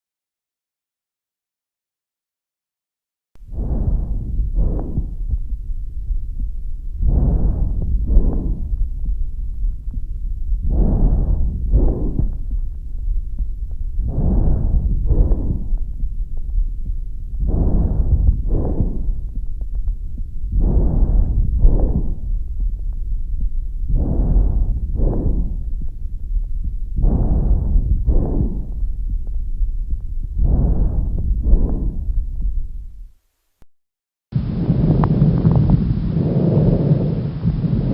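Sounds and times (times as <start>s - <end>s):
breathing through a stethoscope: 3.4s - 33.0s
steady low rumble: 3.4s - 33.2s, 34.4s - 37.9s.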